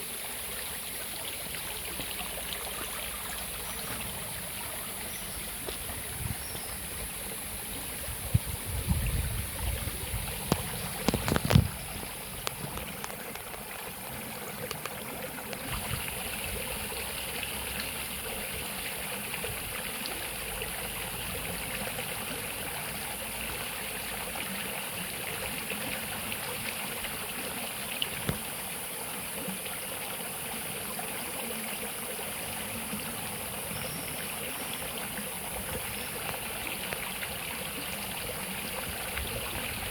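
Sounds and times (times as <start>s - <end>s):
flowing water rushing: 0.0s - 39.9s.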